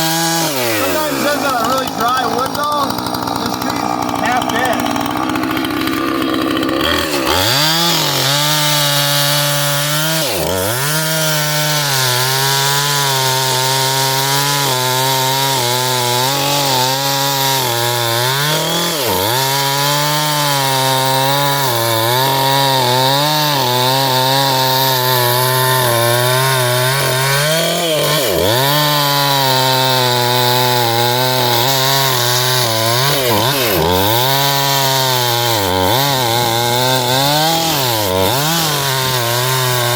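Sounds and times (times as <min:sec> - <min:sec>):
chainsaw cutting wood: 0:00.0 - 0:39.9
person speaking: 0:00.4 - 0:05.4.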